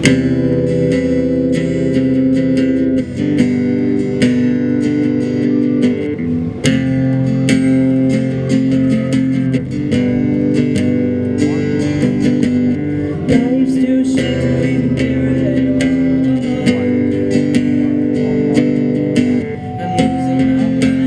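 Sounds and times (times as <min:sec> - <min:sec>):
guitar picking chords: 0:00.0 - 0:21.0.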